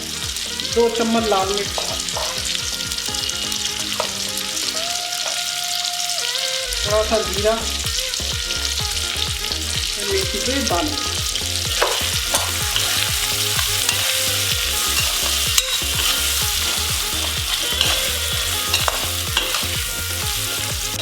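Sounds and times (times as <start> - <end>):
masala sizzling in hot oil: 0.0 - 21.0
spatula scraping and tapping pan: 11.7 - 20.4.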